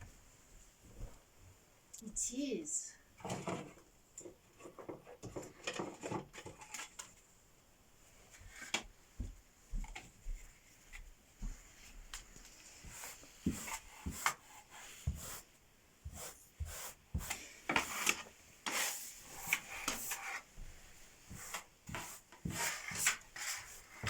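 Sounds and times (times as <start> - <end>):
hand brush sweeping: 12.6 - 24.0.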